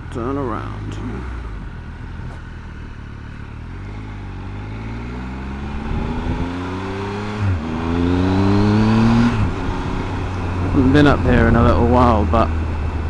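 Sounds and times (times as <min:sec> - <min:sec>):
motorcycle engine accelerating: 0:00.0 - 0:13.0.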